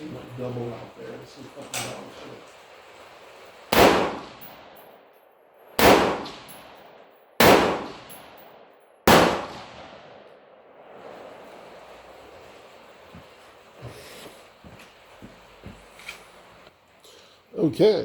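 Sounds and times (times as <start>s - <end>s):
rifle shots with echo: 3.7s - 4.8s, 5.8s - 10.6s.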